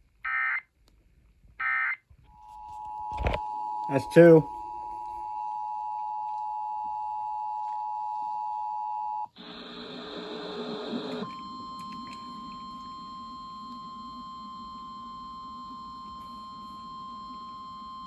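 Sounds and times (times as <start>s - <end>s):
steady-tone weather radio alarm: 1.6s - 18.0s
radio hiss: 9.4s - 11.3s.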